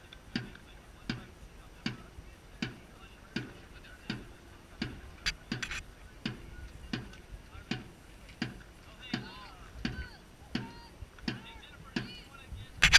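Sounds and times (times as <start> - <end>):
paddle strokes: 0.0 - 12.9.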